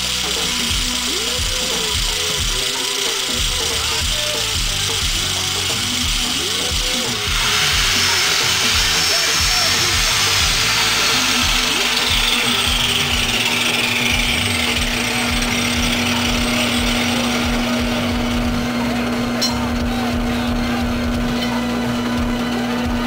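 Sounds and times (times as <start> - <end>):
electric drill drilling: 0.0 - 22.9
high whine sliding down: 7.0 - 22.4.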